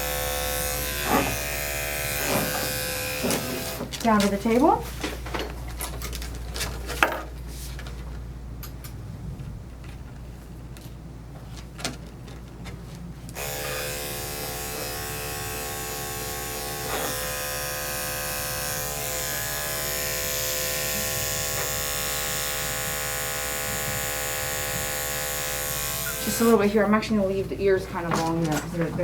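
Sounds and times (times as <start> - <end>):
electric clippers buzzing: 0.0 - 4.6, 13.3 - 27.1.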